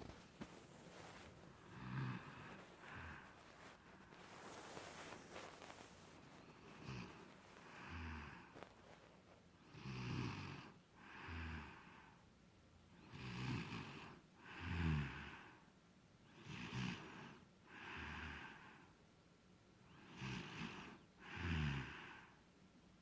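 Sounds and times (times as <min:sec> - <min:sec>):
person snoring: 0:01.0 - 0:08.7, 0:09.7 - 0:12.1, 0:13.1 - 0:15.6, 0:16.3 - 0:18.8, 0:19.9 - 0:22.4.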